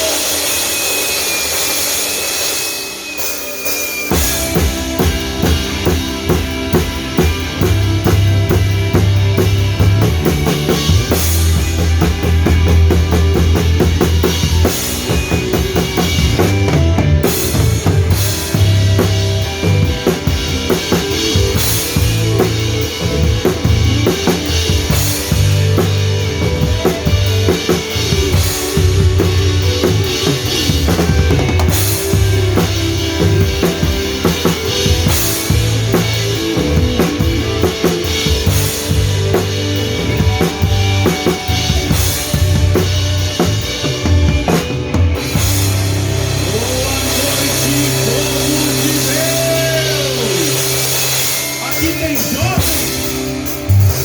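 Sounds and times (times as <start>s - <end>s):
drum kit beat: 0.0s - 54.0s
gospel band playing: 0.0s - 54.0s.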